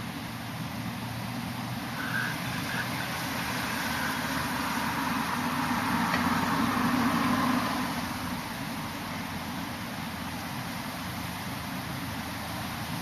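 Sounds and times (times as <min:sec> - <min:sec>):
car driving past: 0:01.9 - 0:08.6.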